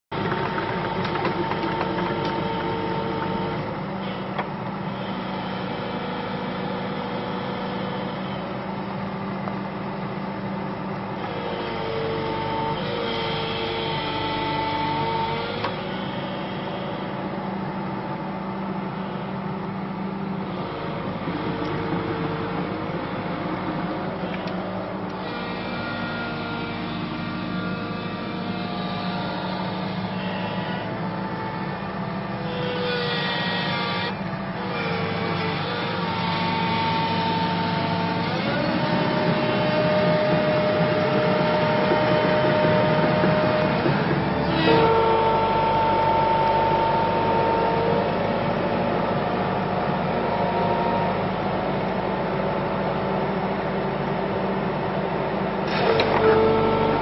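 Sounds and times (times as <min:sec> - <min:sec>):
machine hum with hydraulic whine: 0:00.1 - 0:57.0.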